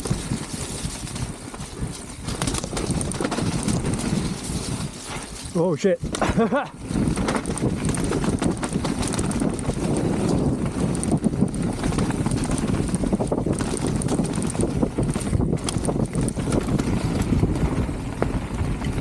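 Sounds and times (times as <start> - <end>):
bike rattling over bumps: 0.0 - 19.0
tyres rolling over dirt: 0.0 - 19.0
wind buffeting microphone: 0.0 - 19.0.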